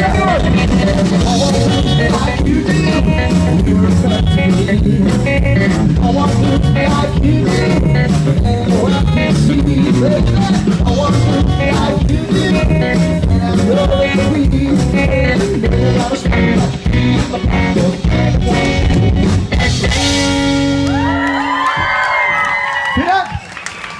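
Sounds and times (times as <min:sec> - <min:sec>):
live rock band playing: 0:00.0 - 0:22.6
audience cheering: 0:20.7 - 0:23.9.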